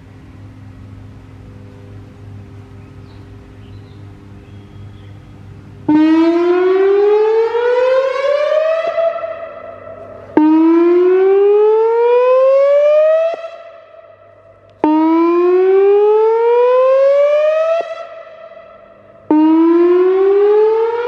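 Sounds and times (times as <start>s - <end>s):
tornado siren whooping: 5.8s - 21.0s.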